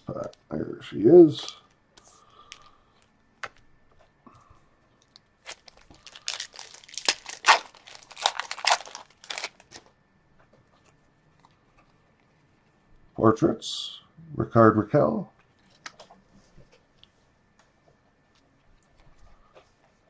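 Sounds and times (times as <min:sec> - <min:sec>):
card pack wrapper clicks: 0:05.0 - 0:09.9
wrapper tearing and crinkling: 0:05.0 - 0:09.9.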